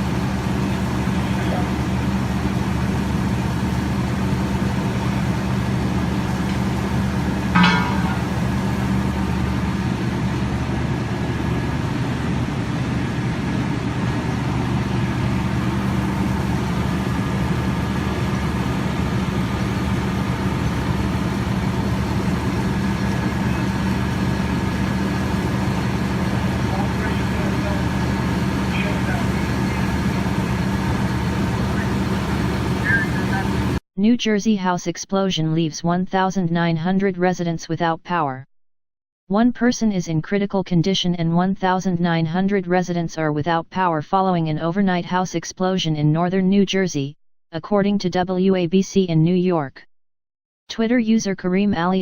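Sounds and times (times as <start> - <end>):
low engine hum: 0.0 - 33.8
loud high-pitched sound: 7.6 - 9.4.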